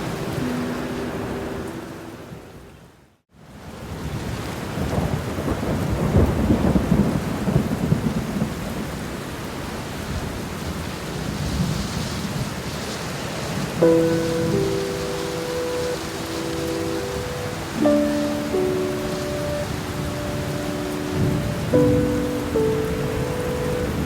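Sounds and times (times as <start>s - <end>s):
soft held musical notes: 0.0s - 2.7s, 13.8s - 24.0s
steady rain hiss: 0.0s - 24.0s.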